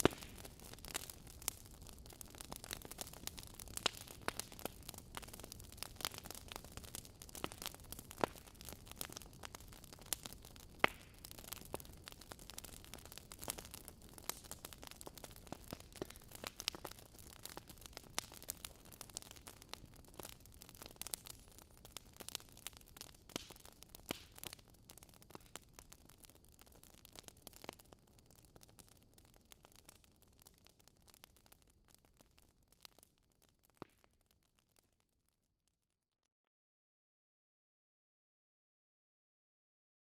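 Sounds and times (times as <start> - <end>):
fire crackling and popping: 0.0 - 35.2.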